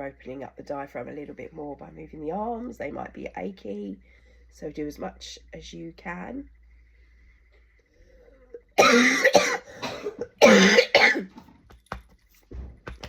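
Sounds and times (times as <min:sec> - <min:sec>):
person coughing: 0:08.8 - 0:11.3.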